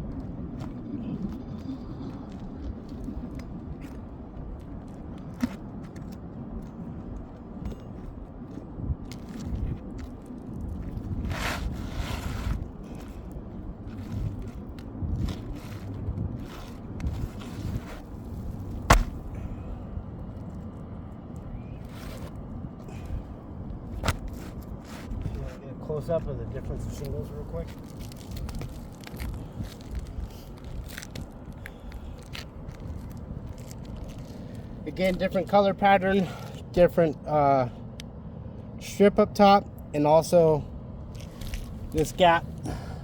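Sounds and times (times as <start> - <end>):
wind rumble on microphone: 0.0 - 35.2
hand tools scraping shingles: 13.9 - 19.3
sharp knocks: 18.9 - 19.2.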